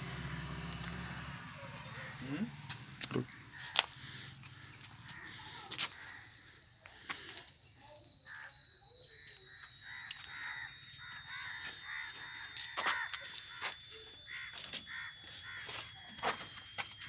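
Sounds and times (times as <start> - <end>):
crows cawing: 1.7 - 2.3, 3.2 - 6.5, 9.8 - 16.5.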